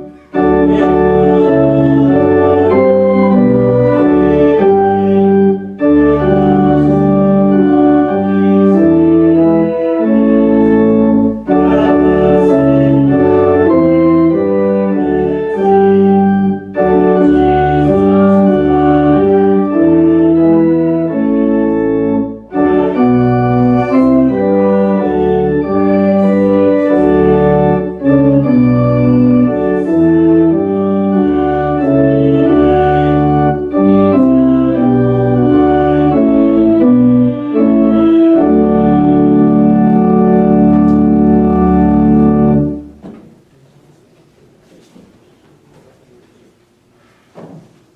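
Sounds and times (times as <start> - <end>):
church organ chords: 0.0 - 43.1.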